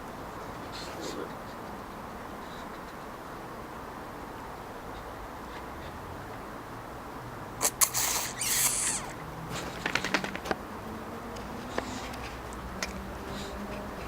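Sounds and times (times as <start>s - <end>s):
paws and claws skittering: 7.6s - 10.6s, 11.4s - 14.0s
dogs scuffling in play: 9.4s - 10.6s.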